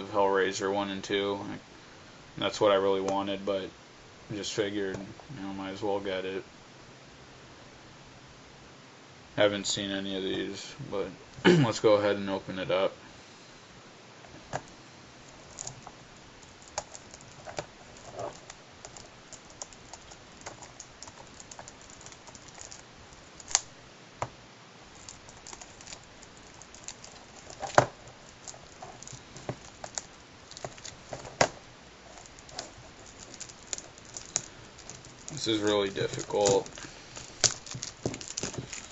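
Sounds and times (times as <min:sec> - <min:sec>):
small clicks on packaging: 0:25.0 - 0:38.9.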